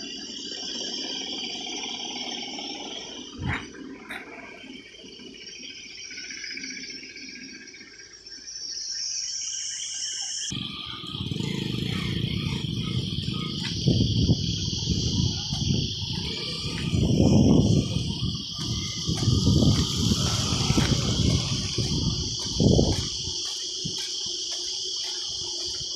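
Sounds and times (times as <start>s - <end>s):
insects chirring: 0.0s - 25.9s
loud low rumble: 10.6s - 23.3s.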